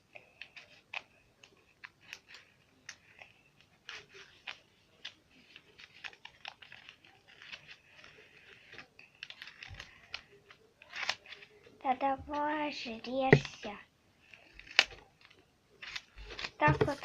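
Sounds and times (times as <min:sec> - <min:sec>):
scissors snipping paper: 0:03.8 - 0:11.6, 0:14.6 - 0:17.0.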